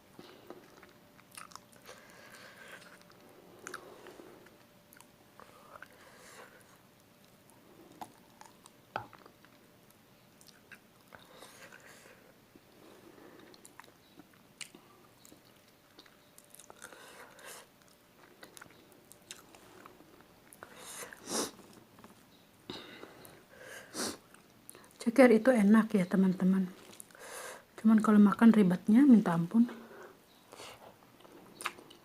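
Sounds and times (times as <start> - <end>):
chewing and biting: 0.3 - 5.1, 17.8 - 20.6.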